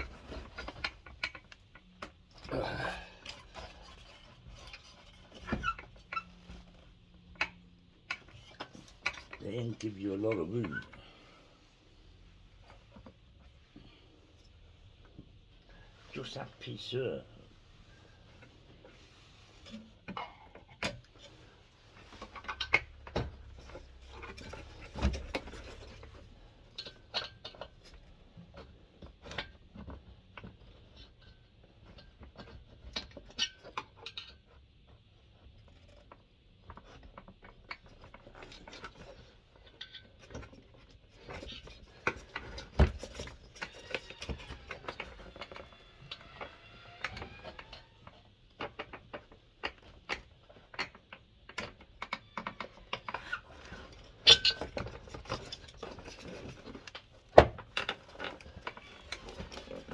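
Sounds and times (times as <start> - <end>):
squeaks: 43.6 - 48.1.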